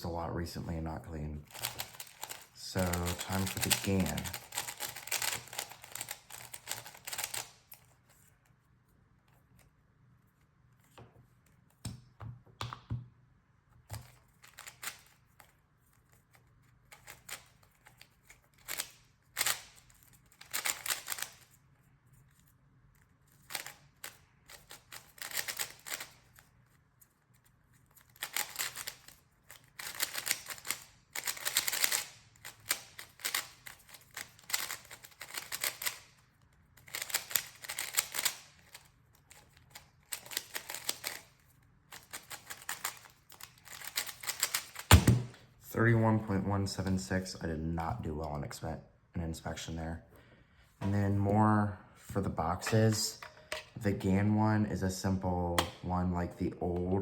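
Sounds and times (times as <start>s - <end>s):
speed cube plastic clicking: 1.5s - 7.9s, 13.9s - 15.5s, 16.9s - 21.5s, 23.4s - 26.3s, 28.0s - 36.2s, 36.8s - 45.3s.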